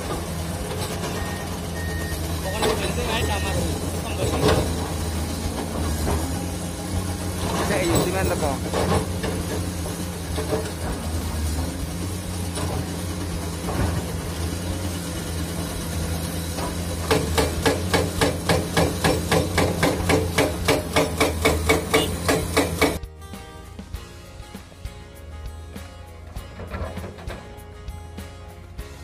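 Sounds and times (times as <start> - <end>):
hydraulic breaker hammering rock: 0.0 - 23.0
diesel excavator engine running: 0.0 - 29.0.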